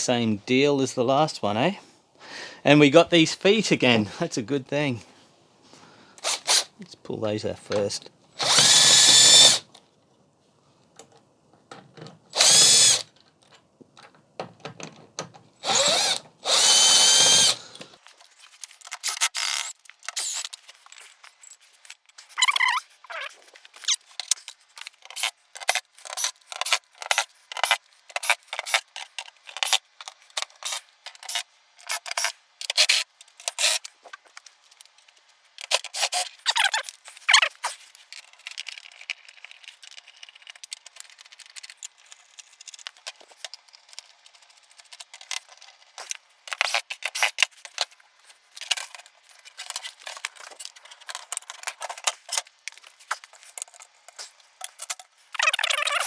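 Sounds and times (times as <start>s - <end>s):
clicking and rattling of hand work: 11.0s - 56.0s.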